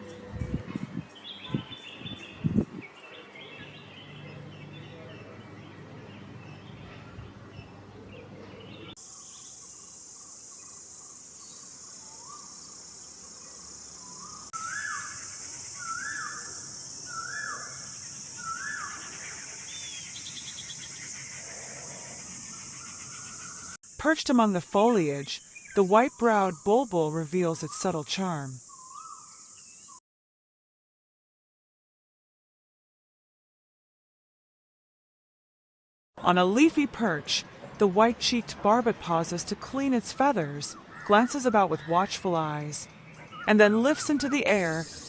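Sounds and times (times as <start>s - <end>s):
wild birds chirping: 0.0s - 23.9s, 24.5s - 30.0s, 36.5s - 45.0s
high insect drone: 9.0s - 27.4s, 44.2s - 45.0s.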